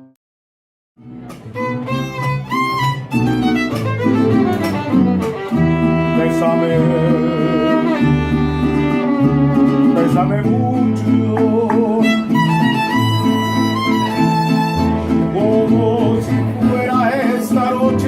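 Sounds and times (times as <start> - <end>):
deep bass notes: 1.0 - 18.0
guitar accompaniment: 1.0 - 18.0
violin melody with vibrato: 1.4 - 11.2, 12.0 - 15.3.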